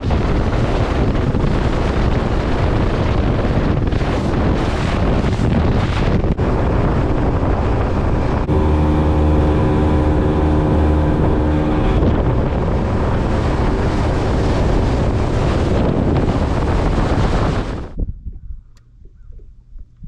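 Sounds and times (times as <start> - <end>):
wind buffeting microphone: 0.0 - 20.0
steady multi-pitched hum: 6.4 - 17.1.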